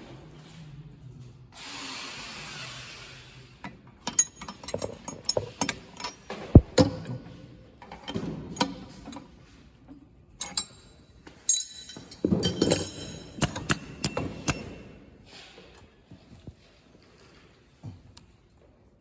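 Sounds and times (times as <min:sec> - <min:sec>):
metal tools clicking and clinking: 0:04.0 - 0:07.2, 0:10.4 - 0:14.9.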